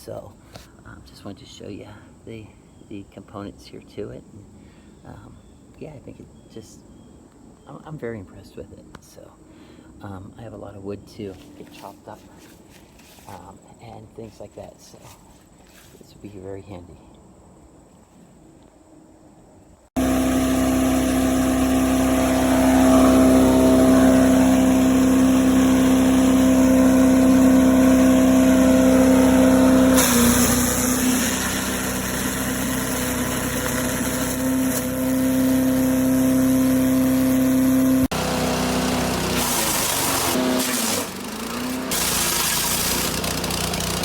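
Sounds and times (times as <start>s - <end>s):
wood chipper engine running: 20.0s - 44.0s.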